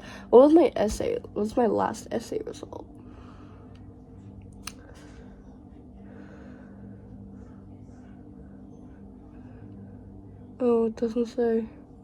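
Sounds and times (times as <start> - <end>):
faint breathing: 0.0 - 0.3, 3.0 - 10.6
low hum: 0.0 - 12.0.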